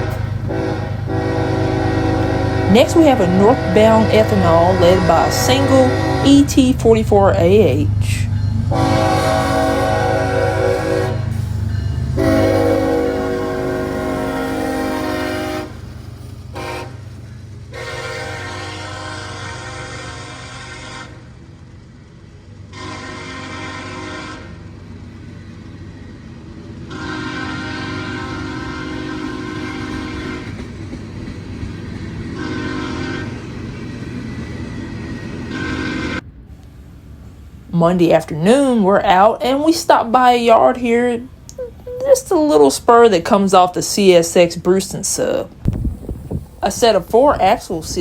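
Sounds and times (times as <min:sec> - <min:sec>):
locomotive air horn blasts: 0:00.0 - 0:07.0, 0:08.7 - 0:15.9, 0:16.5 - 0:21.3, 0:22.7 - 0:24.6, 0:26.9 - 0:30.7, 0:32.4 - 0:33.6, 0:35.5 - 0:36.2
low rumble of passing train: 0:00.0 - 0:48.0.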